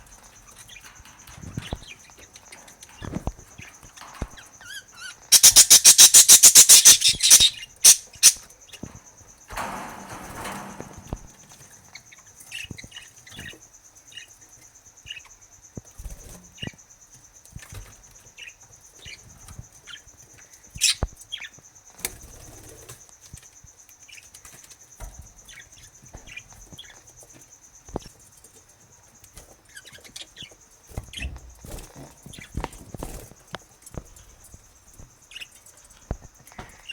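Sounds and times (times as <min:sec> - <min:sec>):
wing flutters: 0:00.0 - 0:08.4
budgerigars chirping: 0:03.0 - 0:08.4, 0:20.8 - 0:21.1.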